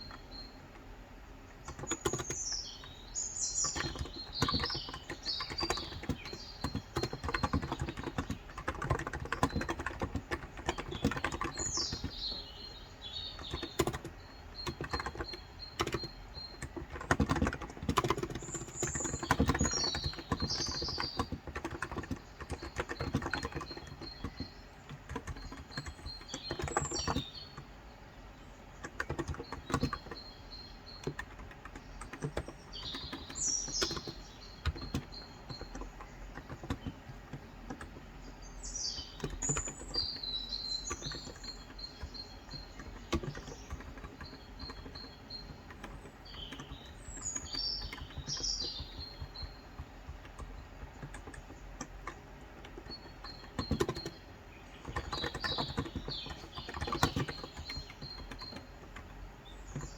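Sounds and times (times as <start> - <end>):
small birds chirping: 0.0 - 59.9
keyboard typing: 1.4 - 59.9.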